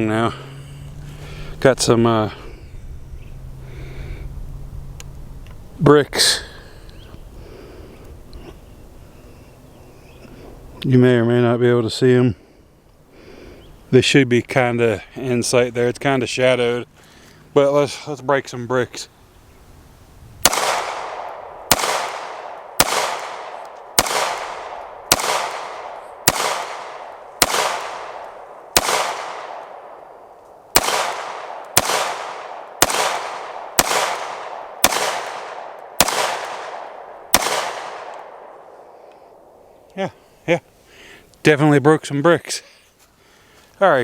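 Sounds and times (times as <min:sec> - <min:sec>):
pistol shots with echo: 0:20.4 - 0:39.6.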